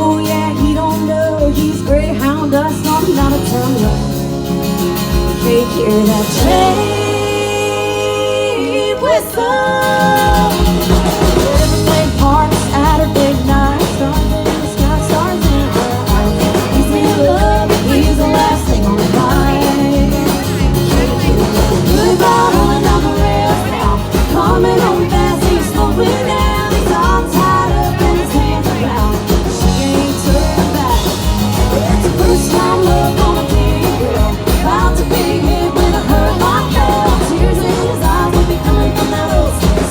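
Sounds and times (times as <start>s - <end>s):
women singing: 0.0s - 4.3s, 5.4s - 39.9s
guitars: 0.0s - 39.9s
drum beat: 10.4s - 39.9s.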